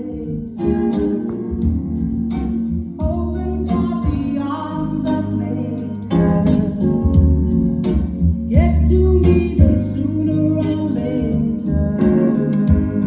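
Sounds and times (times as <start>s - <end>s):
heavy bass: 0.0s - 13.0s
song with singing through speaker: 0.0s - 13.0s
steady drum beat: 12.7s - 13.0s.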